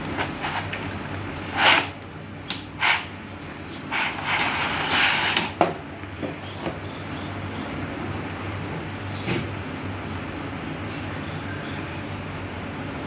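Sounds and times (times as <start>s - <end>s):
packaging rustling and scraping: 0.0s - 2.0s, 3.9s - 5.6s
steady low hum: 0.0s - 13.0s.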